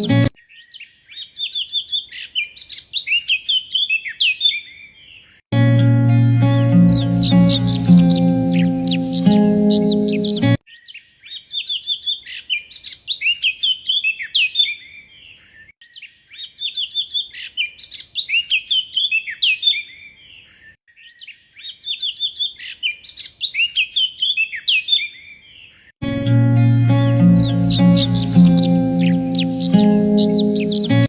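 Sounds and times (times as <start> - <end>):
songbird twittering: 0.0 - 4.2, 6.5 - 14.8, 26.7 - 31.0.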